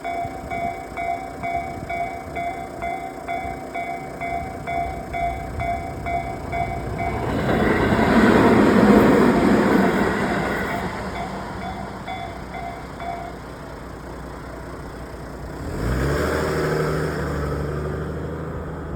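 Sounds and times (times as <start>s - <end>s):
crossing warning bell: 0.0s - 15.4s
train passing: 0.0s - 15.7s
car engine starting and revving: 15.4s - 18.9s.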